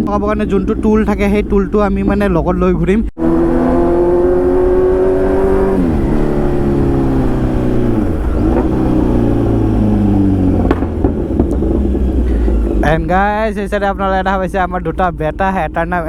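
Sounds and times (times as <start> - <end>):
loud motorcycle engine: 3.2 - 13.4.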